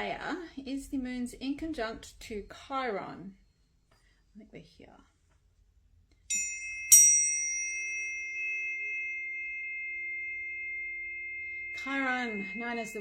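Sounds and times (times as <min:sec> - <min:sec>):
tuning forks ringing: 0:06.3 - 0:13.0.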